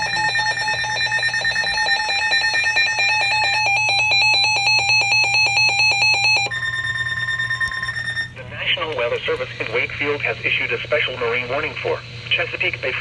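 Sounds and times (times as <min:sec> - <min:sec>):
pulsing electronic beeping: 0:00.0 - 0:08.4.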